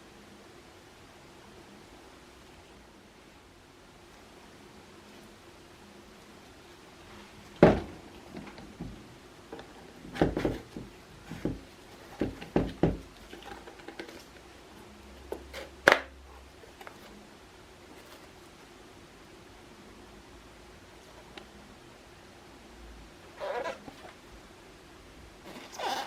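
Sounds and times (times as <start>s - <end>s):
objects knocking and clicking: 9.6s - 14.3s.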